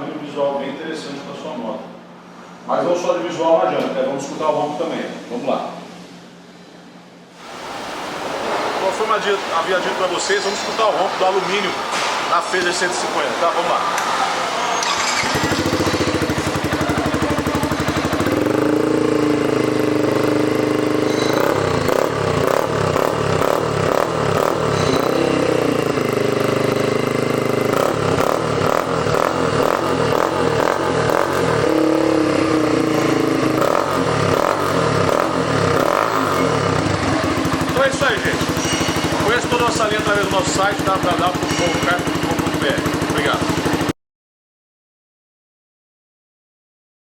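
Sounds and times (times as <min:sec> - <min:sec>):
motorcycle engine revving: 0:07.4 - 0:44.0.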